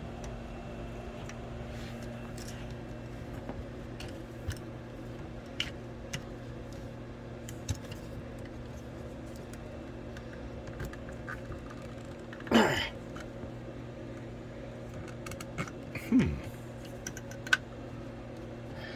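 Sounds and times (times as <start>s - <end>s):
steady low hum: 0.0s - 18.9s
small clicks and taps: 16.8s - 17.7s.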